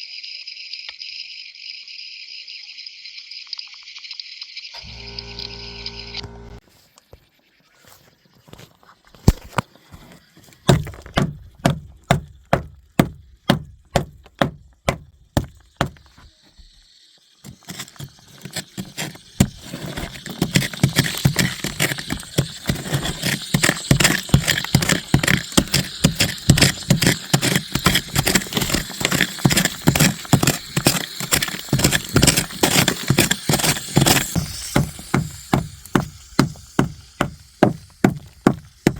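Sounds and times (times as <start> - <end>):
hammer blows on hard floor: 31.2 - 38.9.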